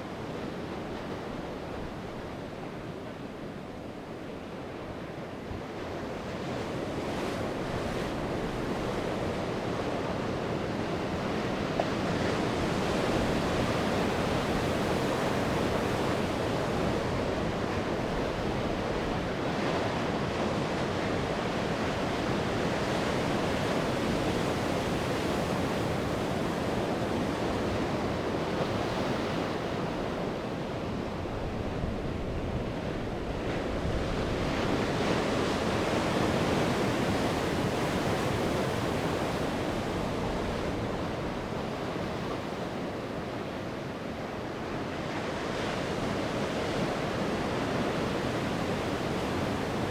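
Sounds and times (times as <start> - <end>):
wind: 0.0 - 49.9
sea waves breaking on shore: 0.1 - 49.9.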